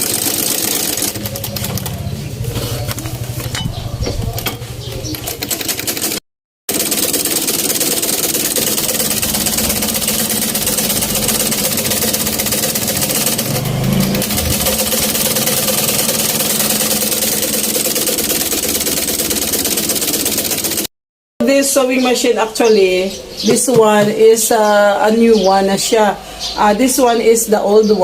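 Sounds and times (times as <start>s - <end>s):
treadle sewing machine clattering: 0.0s - 20.9s.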